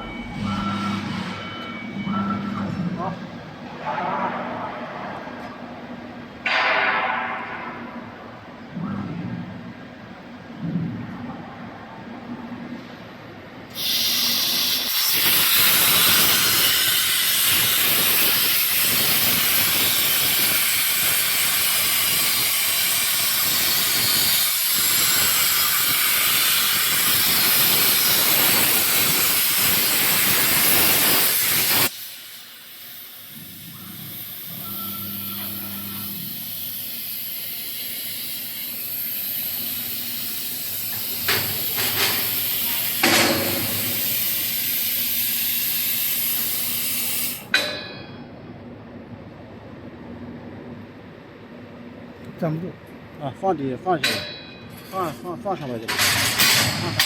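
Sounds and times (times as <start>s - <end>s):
quiet machine hum: 0.0s - 13.7s, 32.6s - 57.0s
plasma arc hissing: 13.7s - 47.5s.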